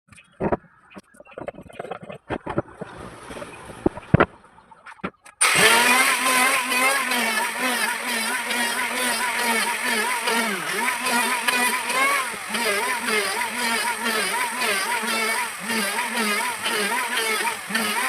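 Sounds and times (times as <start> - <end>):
knocks and clicks of wood and tools: 0.1 - 5.4
power tool motor running: 5.4 - 18.0.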